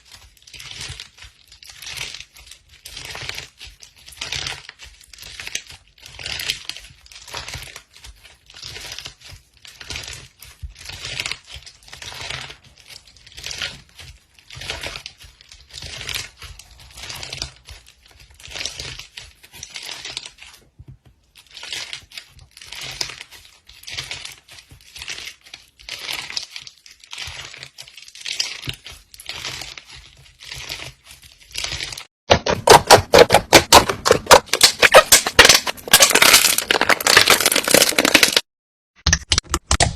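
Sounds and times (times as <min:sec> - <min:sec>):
slime crunching: 0:21.4 - 0:38.5
slime crackling: 0:32.6 - 0:38.5.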